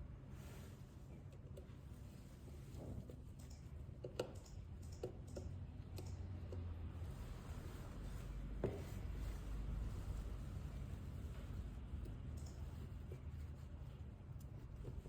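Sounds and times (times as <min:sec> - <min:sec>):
small tools clicking and tapping: 0:03.4 - 0:06.7.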